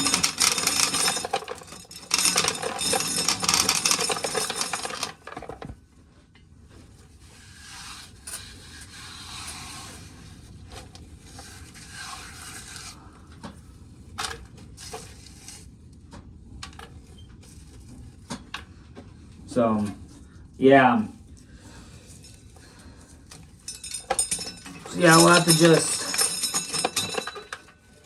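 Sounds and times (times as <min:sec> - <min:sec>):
corn kernels rattling into bucket: 0:00.0 - 0:05.4, 0:24.0 - 0:27.6.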